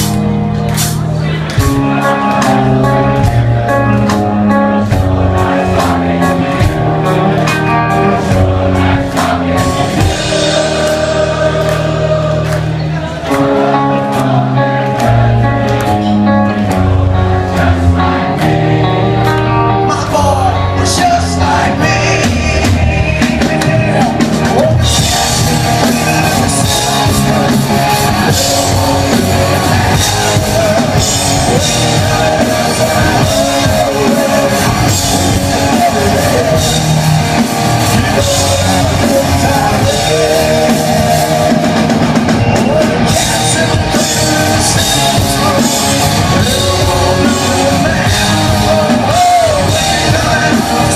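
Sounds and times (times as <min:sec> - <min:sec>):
live rock band playing: 0:00.0 - 0:50.9
drum kit and cymbals: 0:22.2 - 0:50.9.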